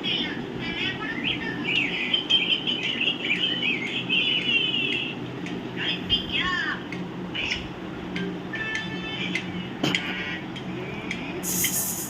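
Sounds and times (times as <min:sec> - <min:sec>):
low steady hum: 0:00.0 - 0:12.0
small birds chirping: 0:01.1 - 0:05.2.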